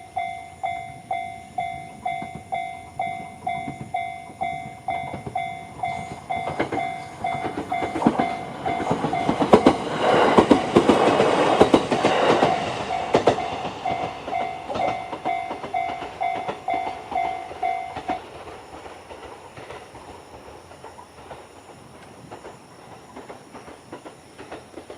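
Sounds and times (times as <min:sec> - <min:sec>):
level-crossing alarm bell ringing: 0:00.0 - 0:18.8
train wheels clattering over rail joints: 0:00.6 - 0:24.9.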